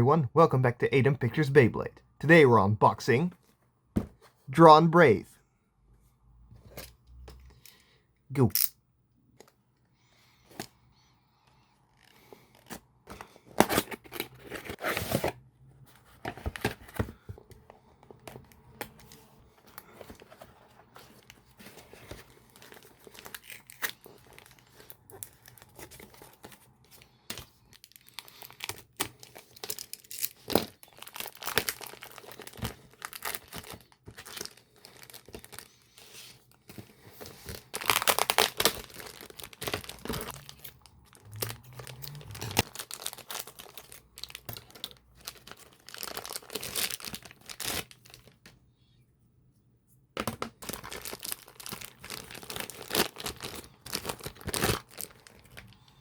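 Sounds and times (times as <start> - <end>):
packaging tearing and crinkling: 21.4 - 26.5, 27.7 - 35.7, 37.2 - 48.3, 50.6 - 55.8.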